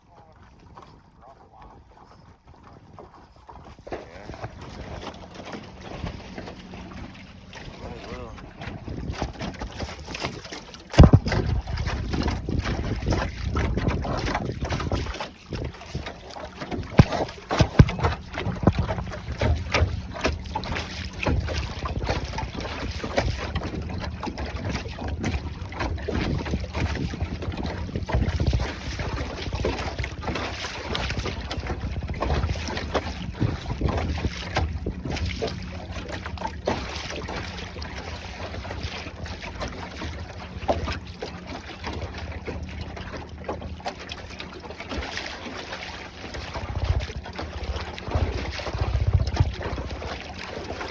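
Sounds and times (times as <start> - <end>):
boat motor running: 0.0 - 50.9
wind buffeting microphone: 2.4 - 41.1, 46.3 - 50.9
scattered knocks: 9.5 - 11.6, 16.8 - 20.4.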